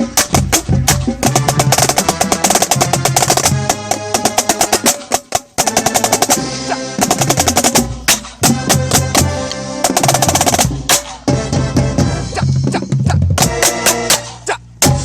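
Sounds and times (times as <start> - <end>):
snare drum rolls: 0.0 - 6.4, 7.0 - 11.3
drum corps playing: 0.0 - 15.0.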